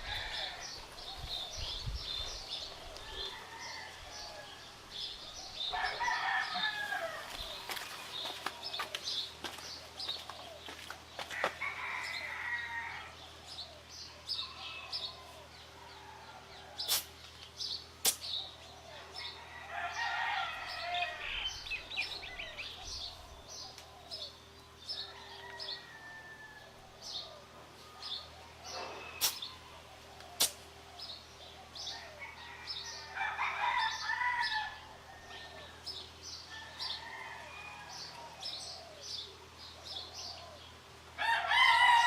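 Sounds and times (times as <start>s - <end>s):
rooster crowing: 0.0s - 0.9s, 3.0s - 5.0s, 5.6s - 7.8s, 11.3s - 13.2s, 18.9s - 22.6s, 24.9s - 27.5s, 31.8s - 38.6s, 41.2s - 42.0s
small birds chirping: 0.0s - 26.0s, 26.8s - 33.2s.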